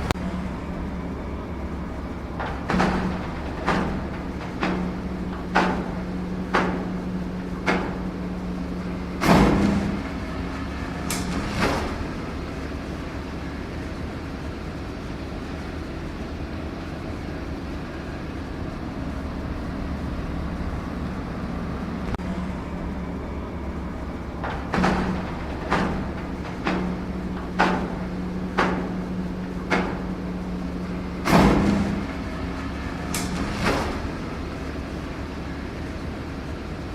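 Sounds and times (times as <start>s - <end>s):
loud clunk: 0.0s - 13.6s, 18.7s - 35.9s
heavy equipment engine humming: 0.0s - 36.9s
sharp knocks: 0.9s - 12.5s, 22.9s - 34.3s.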